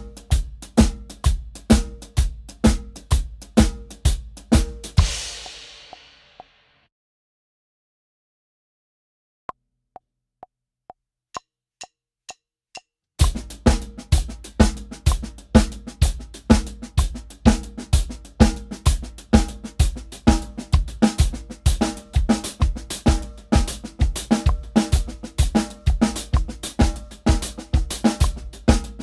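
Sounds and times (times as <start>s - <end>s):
drum kit playing a groove: 0.0s - 6.5s, 13.2s - 29.0s
metronome clicks: 4.7s - 6.5s.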